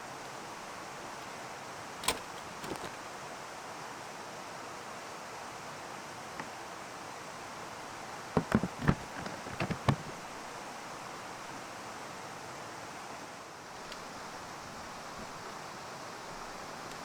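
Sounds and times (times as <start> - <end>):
sharp knocks and clicks: 8.4 - 10.3.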